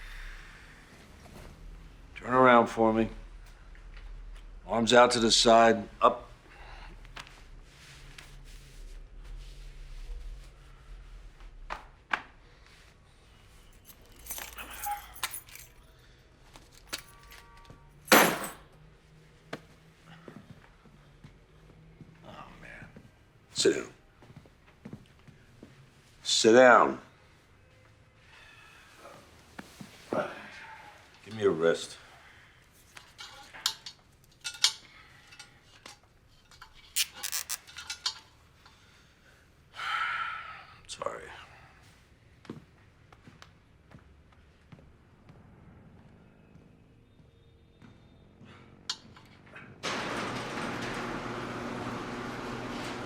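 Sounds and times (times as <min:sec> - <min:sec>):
clothes rustling: 0:12.6 - 0:15.8
keys jangling: 0:13.8 - 0:15.9, 0:16.6 - 0:17.5, 0:18.1 - 0:18.6, 0:37.0 - 0:38.2
zip ties ratchet clicking: 0:37.0 - 0:37.6.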